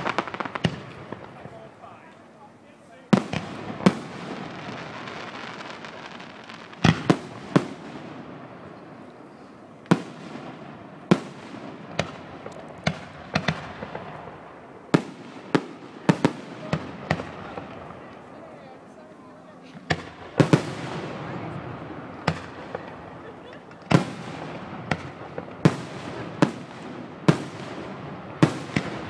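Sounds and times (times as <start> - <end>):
firework shells booming: 0.0 - 2.2, 3.0 - 18.4, 19.7 - 29.0
steady hiss: 0.0 - 29.0.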